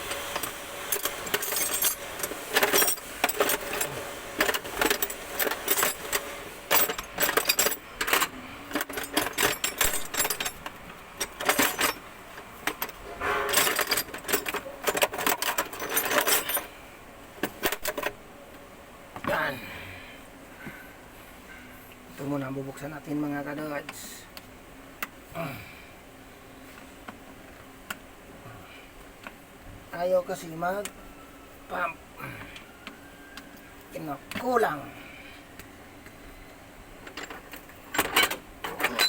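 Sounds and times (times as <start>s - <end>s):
metal tools clinking: 0.1s - 12.0s, 12.6s - 16.7s, 37.1s - 39.0s.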